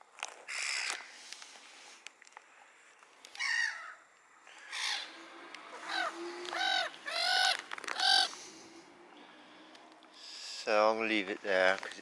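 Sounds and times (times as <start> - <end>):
gull calling: 3.4 - 8.7.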